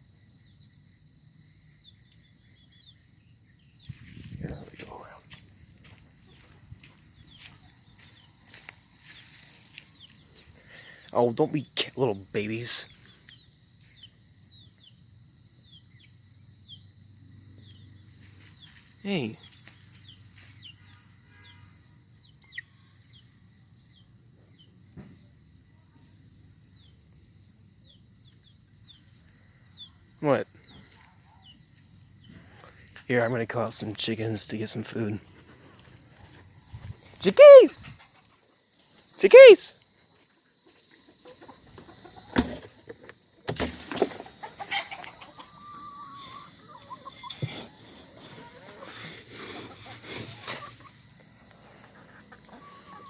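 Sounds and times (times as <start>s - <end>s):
baby chicks peeping: 0.4s - 5.2s, 5.8s - 25.0s, 26.0s - 35.2s, 40.6s - 53.0s
chickens clucking softly: 40.9s - 43.1s, 44.0s - 53.0s.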